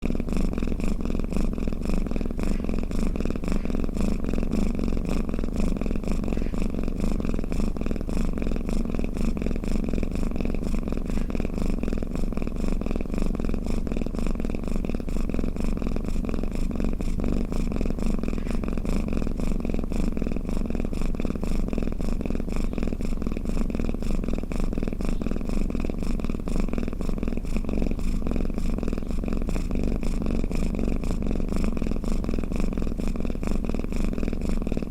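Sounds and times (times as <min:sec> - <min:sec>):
cat purring: 0:00.0 - 0:34.9.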